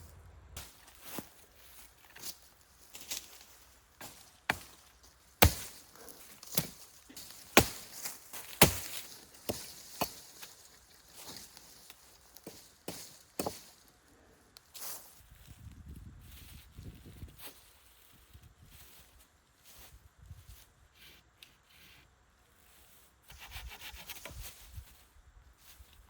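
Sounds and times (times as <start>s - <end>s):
chopping strikes on wood: 4.0s - 5.8s, 6.4s - 10.2s, 12.4s - 13.7s.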